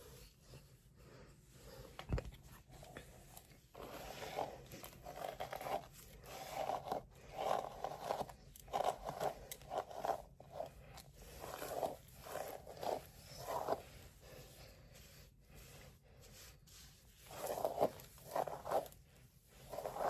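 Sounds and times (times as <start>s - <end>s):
hands scraping through hair: 3.8s - 14.5s, 17.2s - 19.0s, 19.6s - 20.0s.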